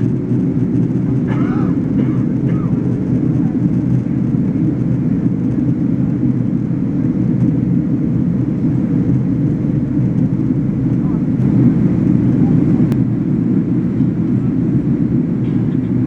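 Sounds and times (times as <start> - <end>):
aircraft cabin engine rumble: 0.0 - 16.0.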